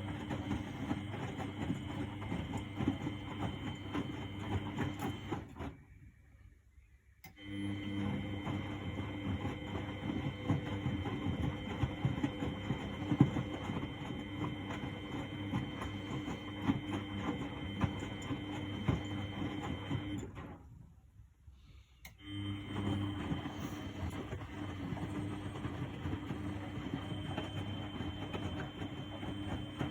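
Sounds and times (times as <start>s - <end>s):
washing machine tumbling load: 7.7s - 20.8s, 22.4s - 29.9s.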